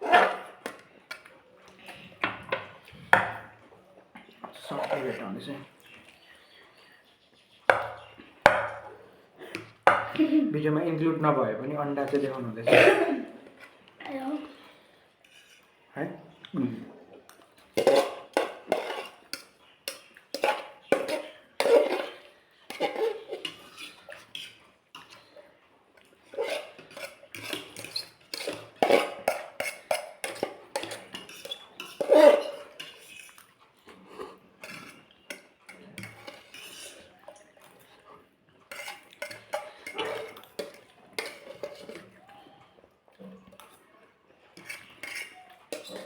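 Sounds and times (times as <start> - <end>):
cutlery clinking on plates: 7.7 - 8.9, 17.3 - 25.3, 26.0 - 37.7, 38.7 - 42.4, 44.6 - 46.0.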